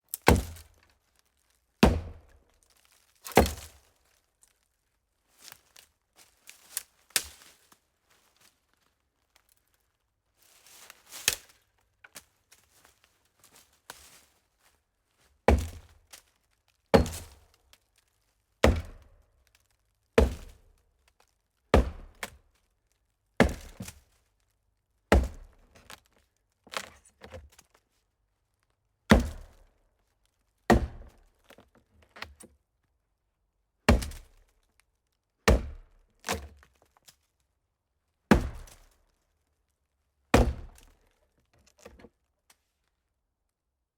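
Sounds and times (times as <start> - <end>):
axe chopping hollow tree: 0.1 - 0.8, 1.8 - 2.4, 3.3 - 3.8, 15.5 - 16.0, 16.9 - 17.5, 18.6 - 19.1, 20.2 - 20.7, 21.7 - 22.4, 23.4 - 24.0, 25.1 - 26.0, 29.1 - 29.7, 30.7 - 31.6, 33.9 - 34.5, 35.5 - 36.6, 38.3 - 39.0, 40.3 - 41.0.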